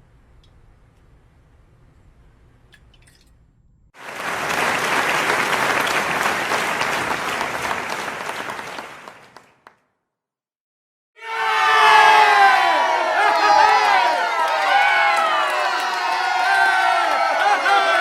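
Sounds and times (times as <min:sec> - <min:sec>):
crowd applauding: 0:04.0 - 0:09.8, 0:11.2 - 0:18.0.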